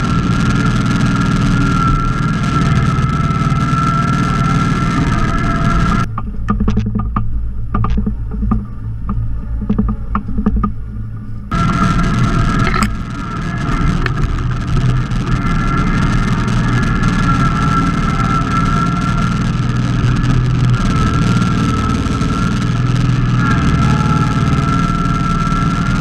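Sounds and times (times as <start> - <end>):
garden tractor engine running: 0.0 - 26.0
high whine: 0.0 - 26.0.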